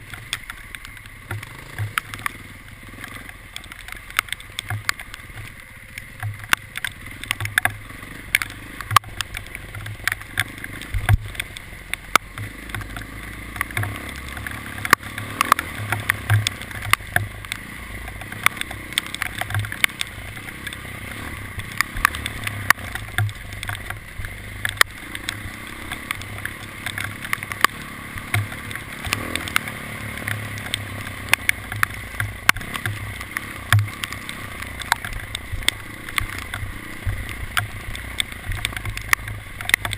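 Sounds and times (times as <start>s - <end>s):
sharp clicks and knocks: 0.0s - 39.9s
vehicle engine running: 0.0s - 39.9s.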